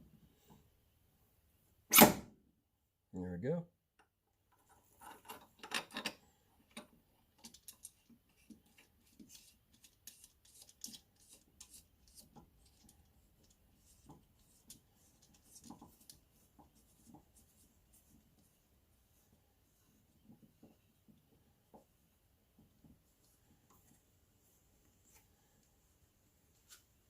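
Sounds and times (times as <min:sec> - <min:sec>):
small metal clicks and scrapes: 0:04.5 - 0:16.2.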